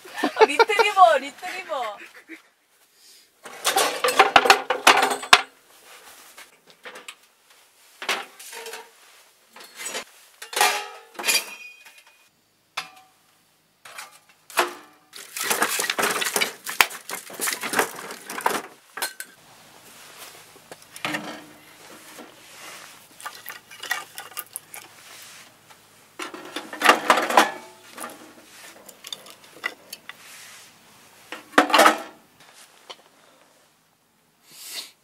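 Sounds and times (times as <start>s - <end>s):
cookware clattering and clinking: 3.5s - 5.5s, 9.6s - 12.2s, 17.8s - 19.4s, 26.2s - 28.2s.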